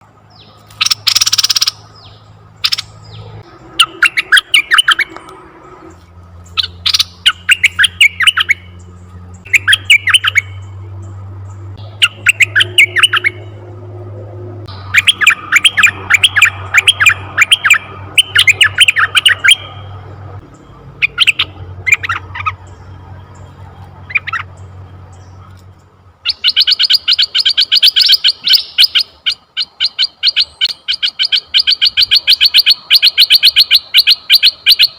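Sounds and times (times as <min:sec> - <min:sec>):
faint low hum: 0:00.0 - 0:26.2
bird chattering calls: 0:00.4 - 0:13.5, 0:14.7 - 0:25.6, 0:26.2 - 0:34.9
bird squawk: 0:00.8 - 0:01.8, 0:02.6 - 0:05.2, 0:09.4 - 0:10.8, 0:11.8 - 0:13.5, 0:14.7 - 0:20.0, 0:21.0 - 0:22.6, 0:26.2 - 0:34.9.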